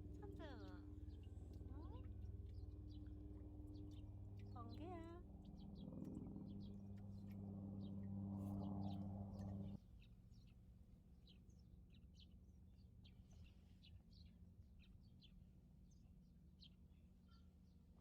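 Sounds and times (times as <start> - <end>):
small birds chirping: 0.0 - 10.6
faint low hum: 0.0 - 18.0.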